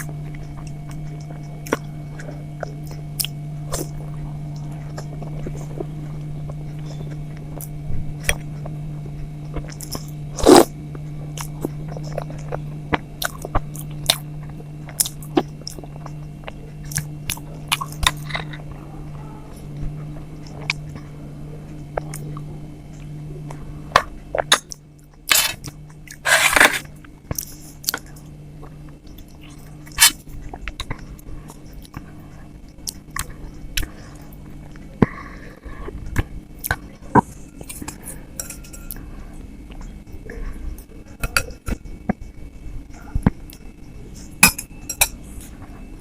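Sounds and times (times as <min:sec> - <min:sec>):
low hum: 0:00.0 - 0:46.0
chewing and mouth sounds: 0:06.5 - 0:18.7
clinks against a plate: 0:38.4 - 0:39.0, 0:44.4 - 0:45.2.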